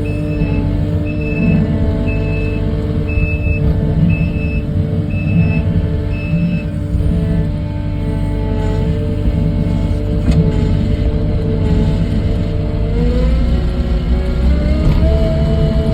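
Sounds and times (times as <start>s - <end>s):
backup alarm beeping: 0.0s - 7.5s
diesel engine running: 0.0s - 15.9s.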